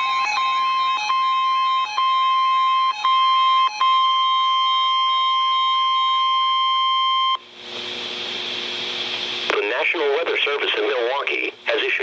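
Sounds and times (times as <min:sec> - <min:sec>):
weather radio alarm tone: 0:00.0 - 0:07.4
radio hiss: 0:08.7 - 0:12.0.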